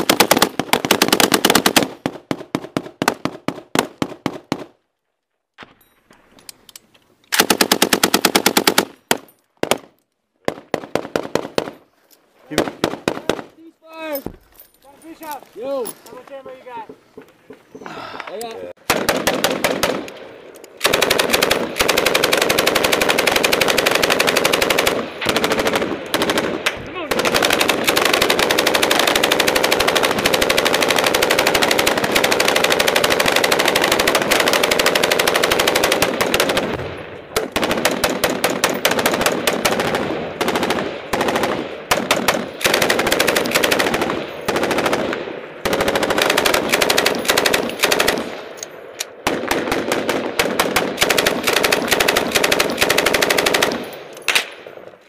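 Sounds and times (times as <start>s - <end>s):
machine guns firing: 0.0s - 4.7s, 7.3s - 9.8s, 12.5s - 13.5s, 18.8s - 20.1s, 20.8s - 48.6s, 49.2s - 54.6s.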